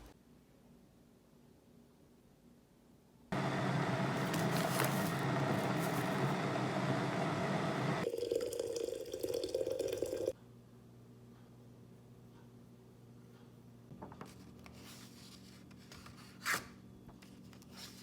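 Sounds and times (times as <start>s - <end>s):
water running into a container: 8.0s - 10.3s.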